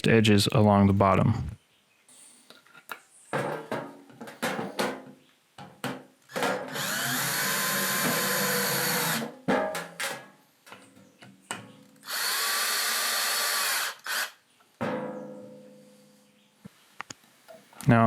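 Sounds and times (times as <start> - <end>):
knocks from handling wood: 3.4 - 6.7, 9.4 - 10.3
cordless drill driving screws: 6.3 - 9.3, 12.0 - 14.4.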